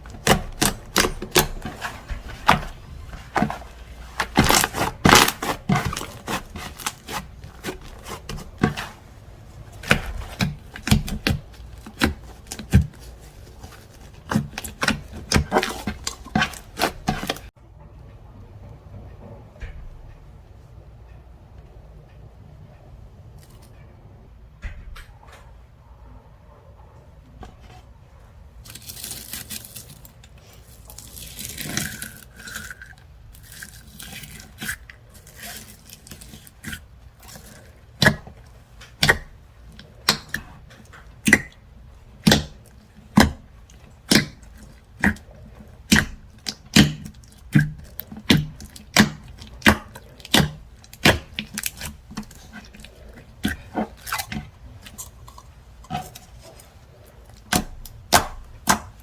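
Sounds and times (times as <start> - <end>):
slime popping: 0.1 - 17.5, 42.2 - 56.7.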